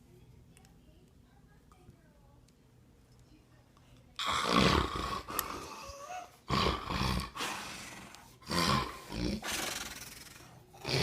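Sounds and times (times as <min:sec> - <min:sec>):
man snoring loudly: 0:04.2 - 0:05.3, 0:06.5 - 0:07.4, 0:08.5 - 0:10.1.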